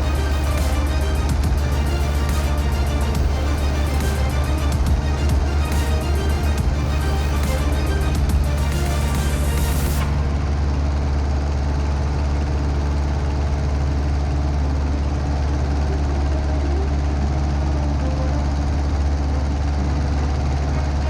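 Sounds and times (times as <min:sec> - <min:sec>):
music track: 0:00.0 - 0:11.5.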